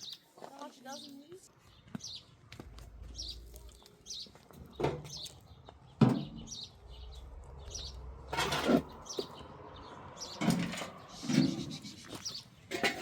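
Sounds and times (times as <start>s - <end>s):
small bird chirping: 8.9s - 12.6s.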